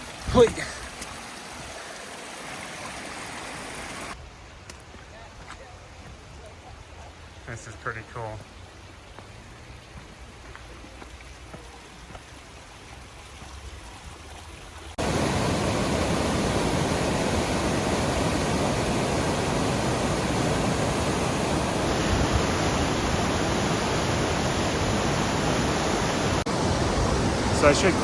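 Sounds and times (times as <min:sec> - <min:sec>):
waterfall rushing: 0:00.0 - 0:04.2, 0:15.0 - 0:28.0.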